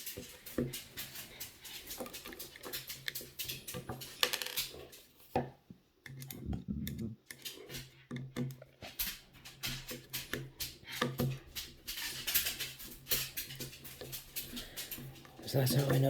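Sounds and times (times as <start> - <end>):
small plastic parts clicking: 6.0 - 16.0.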